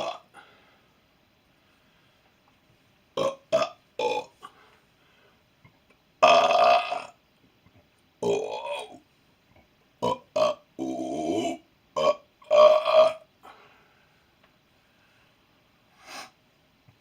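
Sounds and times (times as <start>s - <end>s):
person burping: 0.0s - 0.3s, 3.2s - 4.4s, 8.2s - 9.0s, 10.0s - 13.3s.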